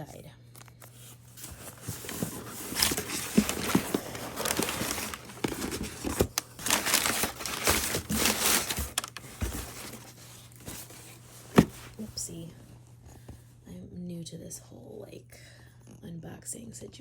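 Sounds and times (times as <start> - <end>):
packaging crinkling: 0.6 - 12.0.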